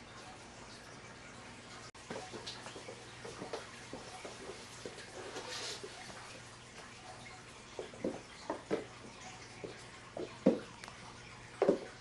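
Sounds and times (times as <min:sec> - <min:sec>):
soft taps and knocks: 0:07.8 - 0:11.0, 0:11.6 - 0:12.0.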